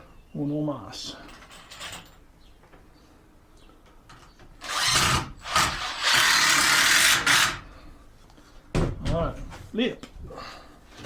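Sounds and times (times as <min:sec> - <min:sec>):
power drill driving screw into wood: 0:04.6 - 0:07.6.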